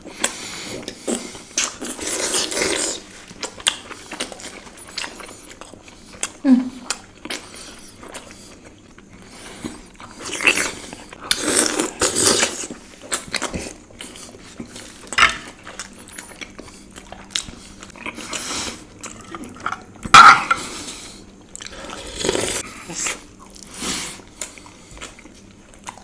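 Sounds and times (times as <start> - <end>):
person chewing and biting: 0.2 - 18.4.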